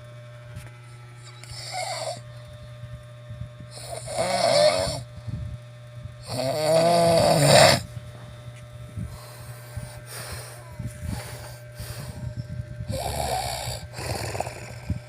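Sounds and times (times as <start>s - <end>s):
steady low hum: 0.0s - 15.0s
person snoring: 1.3s - 2.2s, 3.7s - 5.1s, 6.2s - 7.9s, 9.1s - 12.3s, 12.9s - 15.0s.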